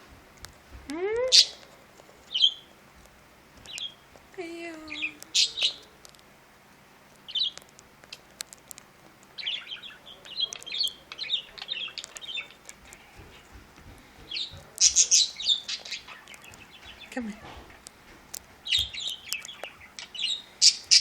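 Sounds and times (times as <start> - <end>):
budgerigars chirping and chattering: 1.3 - 1.6, 2.3 - 2.7, 3.6 - 4.0, 4.9 - 6.0, 7.3 - 8.2, 9.4 - 13.6, 14.2 - 17.9, 18.6 - 21.0
sharp clicks: 15.7 - 21.0.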